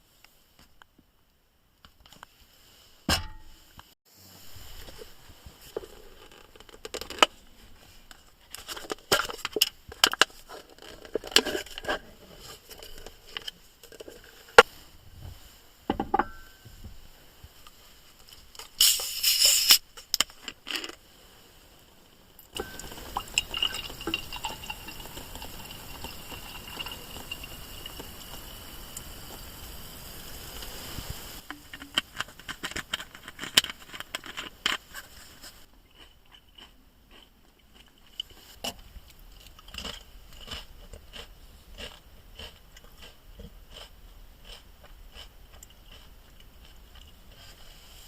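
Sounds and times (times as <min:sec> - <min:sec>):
short hissing burst: 0:18.8 - 0:19.9, 0:27.6 - 0:31.5
high insect-like tone: 0:22.6 - 0:31.4.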